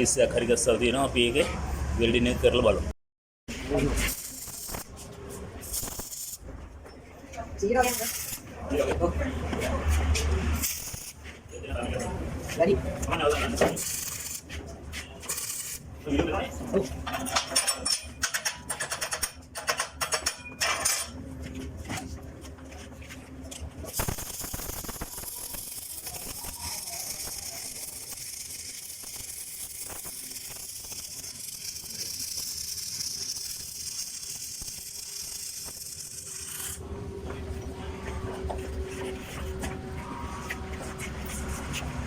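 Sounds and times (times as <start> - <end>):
welding electrode scratching steel: 3.7 - 6.5, 7.6 - 8.9, 10.5 - 11.4, 13.3 - 15.9, 23.8 - 36.8
welding arc crackling hiss: 4.0 - 5.0, 5.6 - 6.4, 7.8 - 8.4, 10.6 - 11.2, 13.8 - 14.4, 15.3 - 15.8, 23.9 - 36.8.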